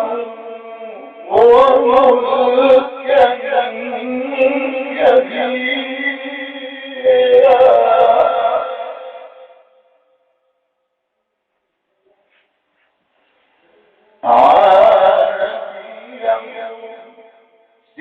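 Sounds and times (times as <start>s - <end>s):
man chanting melodic recitation: 0.0s - 9.5s, 14.2s - 18.0s.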